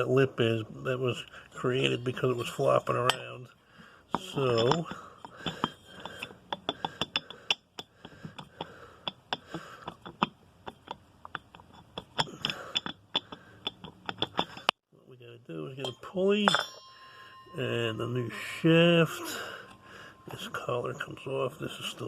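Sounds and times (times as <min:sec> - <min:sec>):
metal parts clinking: 0:04.2 - 0:07.6, 0:15.8 - 0:22.0.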